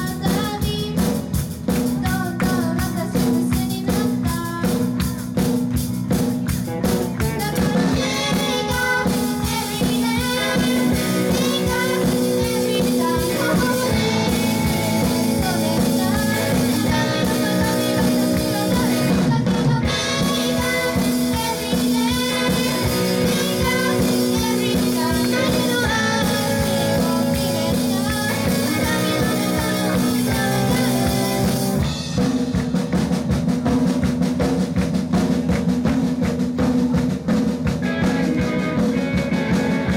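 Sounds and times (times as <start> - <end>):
bass: 0.0 - 39.9
drum kit: 0.0 - 39.9
live band playing: 0.0 - 39.9
person singing: 6.7 - 31.8.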